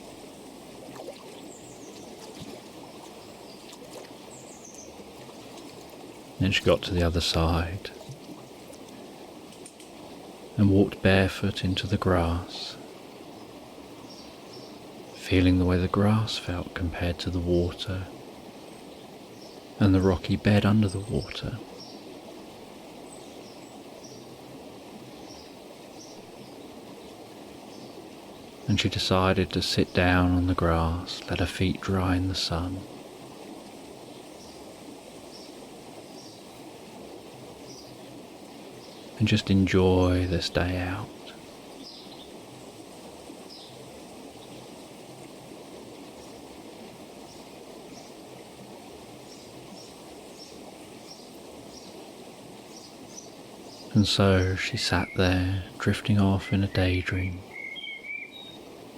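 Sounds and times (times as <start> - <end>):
steady hiss: 0.0 - 58.9
stream water flowing: 0.0 - 58.9
faint bird chirps: 52.7 - 58.6.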